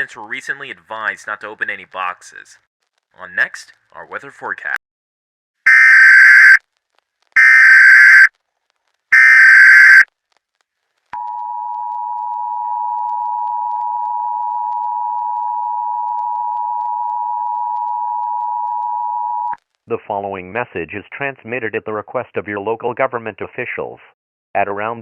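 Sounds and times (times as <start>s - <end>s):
screechy data warble: 5.7s - 6.6s, 7.4s - 8.3s, 9.2s - 10.0s.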